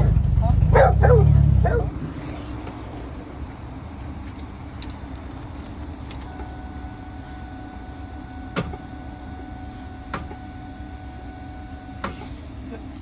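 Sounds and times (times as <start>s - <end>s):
steady low rumble: 0.0s - 5.5s.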